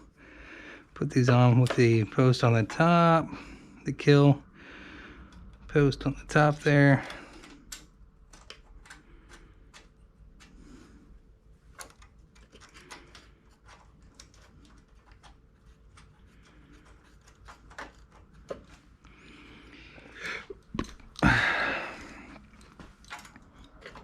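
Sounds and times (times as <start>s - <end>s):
tools clicking and tapping: 6.9s - 10.7s, 11.7s - 18.8s.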